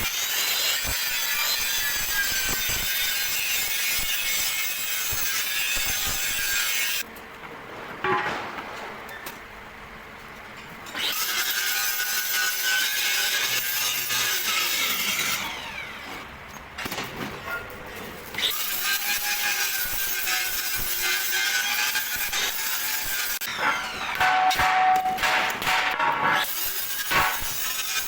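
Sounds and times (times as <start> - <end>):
angle grinder cutting steel: 0.0 - 7.0, 11.0 - 16.0, 18.4 - 25.1, 26.3 - 28.0.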